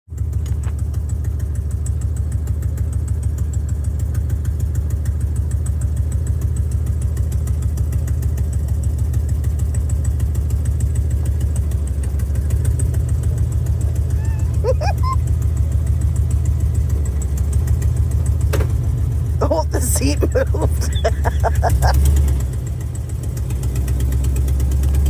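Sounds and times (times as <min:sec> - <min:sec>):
engine with deep exhaust pulse: 0:00.1 - 0:19.4, 0:21.9 - 0:25.0.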